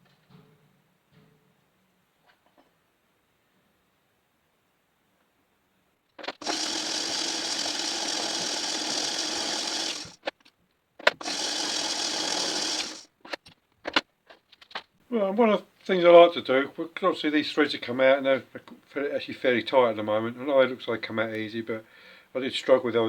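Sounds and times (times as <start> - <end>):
small power tool running: 6.2 - 10.3, 11.1 - 13.1.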